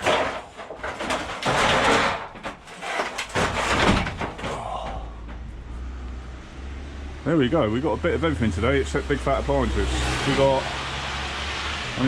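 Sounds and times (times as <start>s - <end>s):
metal rattling and scraping: 0.0s - 5.7s.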